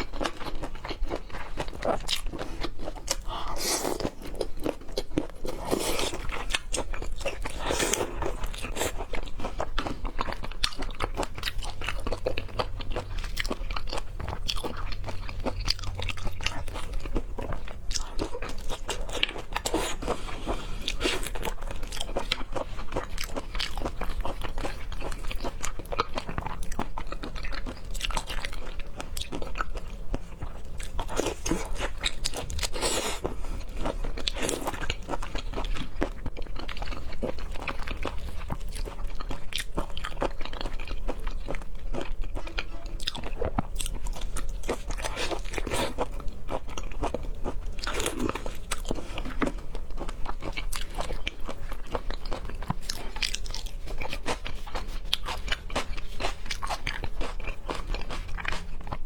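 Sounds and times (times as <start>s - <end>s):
chewing and crunching food: 0.0s - 59.0s.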